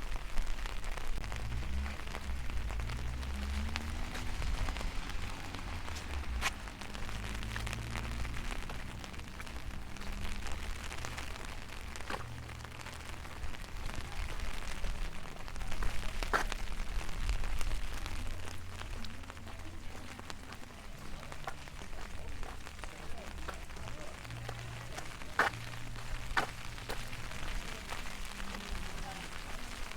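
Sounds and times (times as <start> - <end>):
rain falling: 0.0 - 29.9
low rumble: 0.2 - 29.9.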